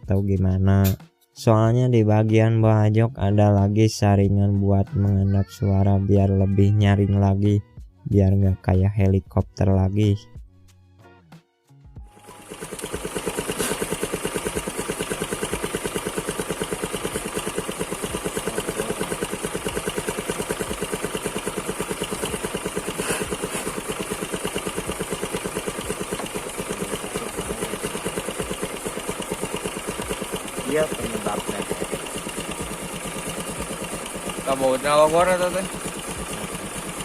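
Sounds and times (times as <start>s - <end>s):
scooter engine idling roughly: 12.1s - 37.0s.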